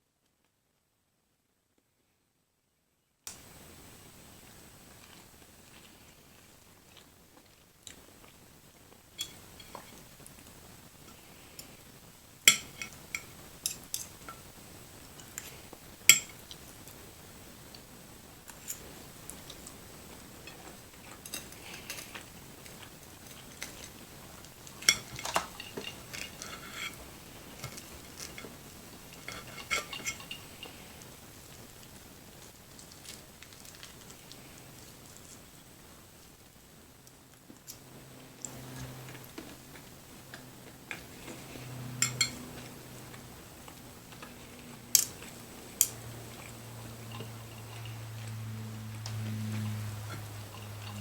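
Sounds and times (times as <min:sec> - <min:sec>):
cutlery clinking on plate: 0:09.2 - 0:10.0, 0:12.5 - 0:14.4, 0:24.8 - 0:27.0, 0:29.1 - 0:30.8, 0:42.0 - 0:42.6.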